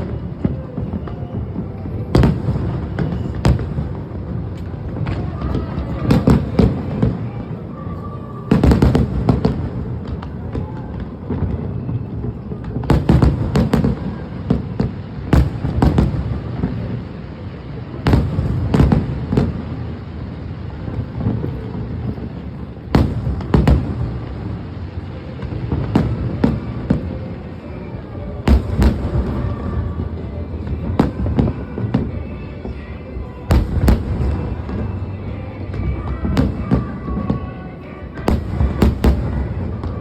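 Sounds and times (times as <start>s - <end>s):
fireworks booming: 0.0s - 40.0s.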